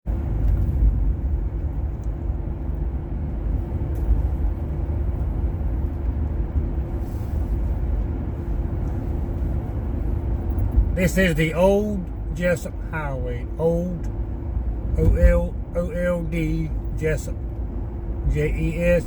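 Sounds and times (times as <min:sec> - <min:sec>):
vehicle engine and road noise: 0:00.0 - 0:19.0
faint steady hum: 0:07.0 - 0:19.0.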